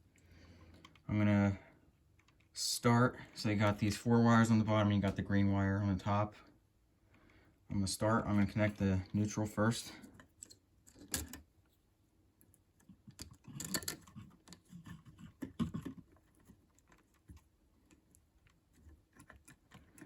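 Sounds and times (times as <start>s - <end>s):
wire and switch clicks and rustles: 1.9s - 2.6s, 10.0s - 11.8s, 12.4s - 20.0s.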